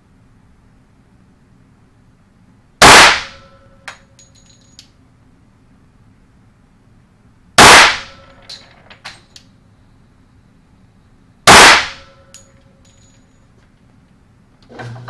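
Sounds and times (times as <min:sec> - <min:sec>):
pistol shots: 0:02.8 - 0:03.5, 0:07.6 - 0:08.3, 0:11.5 - 0:12.2
light metallic clinks: 0:03.8 - 0:05.0, 0:12.3 - 0:13.9.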